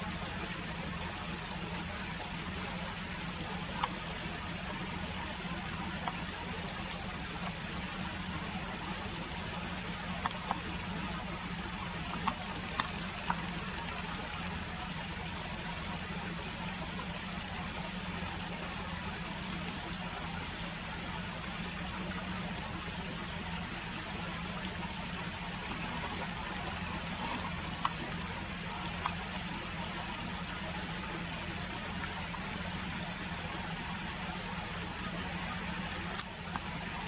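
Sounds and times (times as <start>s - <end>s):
car engine idling: 0.0s - 37.0s
light clicks: 3.6s - 4.4s, 5.9s - 6.4s, 9.8s - 11.1s, 11.9s - 13.5s, 26.6s - 29.4s, 36.0s - 36.7s.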